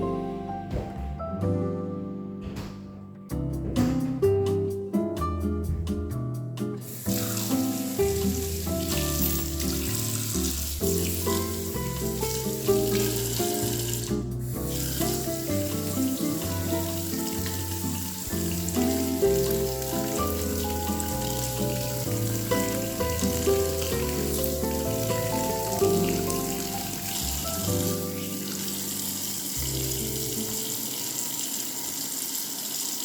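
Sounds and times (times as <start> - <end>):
background music with bass: 0.0 - 6.8, 7.5 - 28.2
water running from faucet: 6.8 - 33.0.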